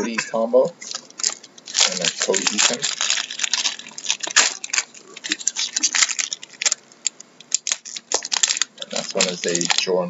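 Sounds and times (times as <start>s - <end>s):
trading cards clicking and rustling: 0.8s - 10.0s.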